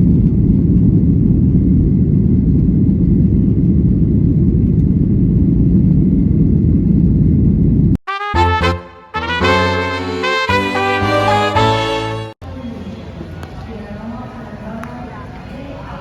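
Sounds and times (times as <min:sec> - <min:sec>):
airliner rumble: 0:00.0 - 0:08.0.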